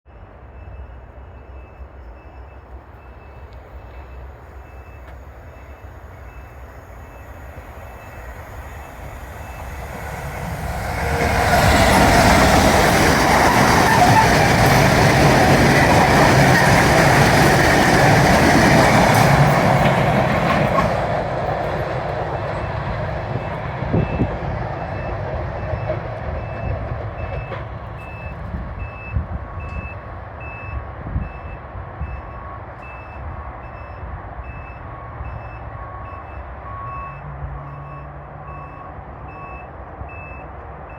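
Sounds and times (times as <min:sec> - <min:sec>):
diesel locomotive engine rumbling: 0:00.0 - 0:40.9
freight wagons clattering over rails: 0:09.1 - 0:29.9.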